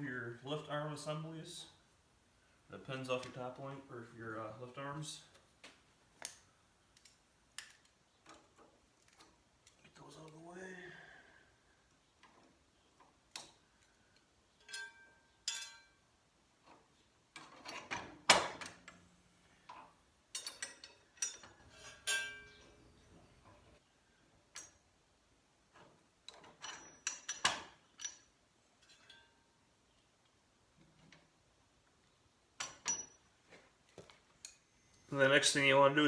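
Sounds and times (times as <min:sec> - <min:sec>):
metal pins clicking and clinking: 0:06.2 - 0:09.9, 0:12.2 - 0:23.6, 0:25.7 - 0:29.4, 0:32.6 - 0:33.2.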